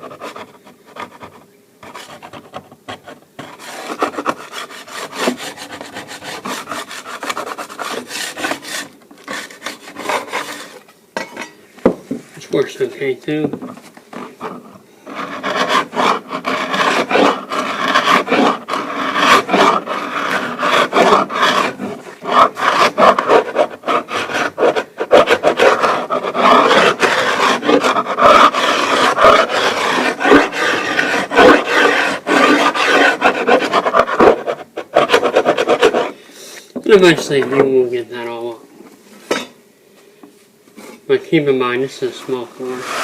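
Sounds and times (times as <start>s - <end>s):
abrasive pad scrubbing wooden floor: 14.1s - 36.1s, 42.0s - 43.0s.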